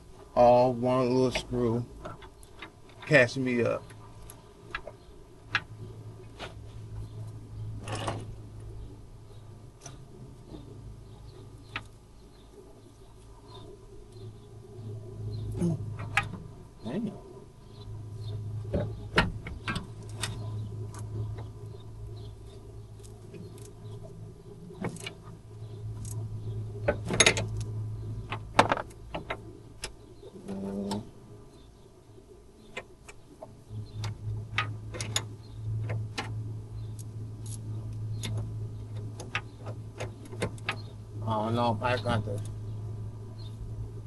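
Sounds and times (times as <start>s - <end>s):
steady low hum: 0.0s - 44.0s.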